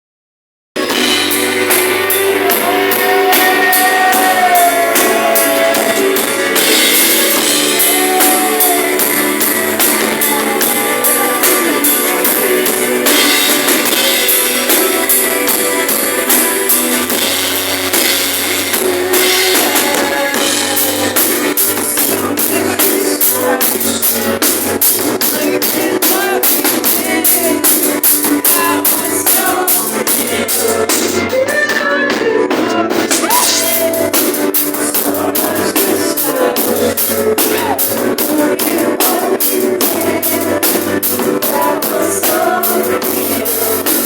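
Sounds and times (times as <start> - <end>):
drum kit with cymbals: 0.8 - 44.0
electric guitars: 0.8 - 44.0
gliding melody line: 0.9 - 31.5.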